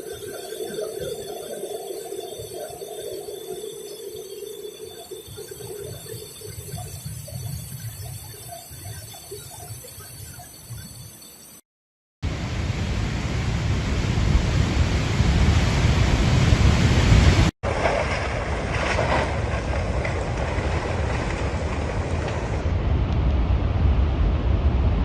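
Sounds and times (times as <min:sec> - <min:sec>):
wind noise on microphone: 0:12.2 - 0:25.0.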